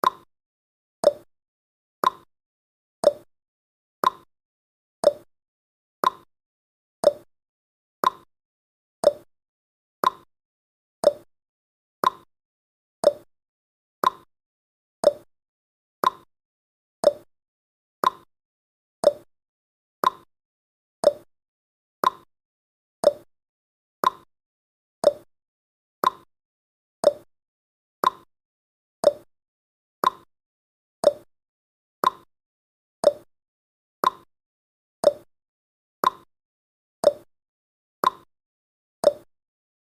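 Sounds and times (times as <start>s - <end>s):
timer ticking: 0.0s - 0.3s, 1.0s - 1.3s, 2.0s - 2.3s, 3.0s - 3.3s, 4.0s - 4.3s, 5.0s - 5.3s, 6.0s - 6.3s, 7.0s - 7.3s, 8.0s - 8.3s, 9.0s - 9.3s, 10.0s - 10.3s, 11.0s - 11.3s, 12.0s - 12.3s, 13.0s - 13.3s, 14.0s - 14.3s, 15.0s - 15.3s, 16.0s - 16.3s, 17.0s - 17.3s, 18.0s - 18.3s, 19.0s - 19.3s, 20.0s - 20.3s, 21.0s - 21.3s, 22.0s - 22.3s, 23.0s - 23.3s, 25.0s - 25.3s, 26.0s - 26.3s, 27.0s - 27.3s, 29.0s - 29.3s, 30.0s - 30.3s, 31.0s - 31.3s, 32.0s - 32.3s, 33.0s - 33.3s, 34.0s - 34.3s, 35.0s - 35.3s, 36.0s - 36.3s, 37.0s - 37.3s, 38.0s - 38.3s, 39.0s - 39.3s.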